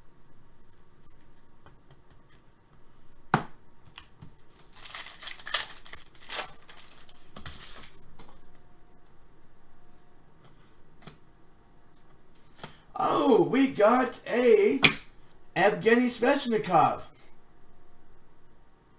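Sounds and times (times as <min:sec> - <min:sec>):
wrapper tearing and crinkling: 0:04.0 - 0:08.5.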